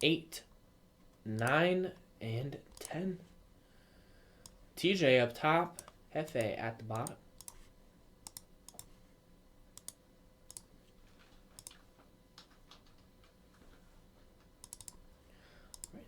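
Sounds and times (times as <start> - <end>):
computer mouse clicks: 5.8 - 9.0, 9.8 - 11.8, 14.4 - 15.0, 15.7 - 16.0.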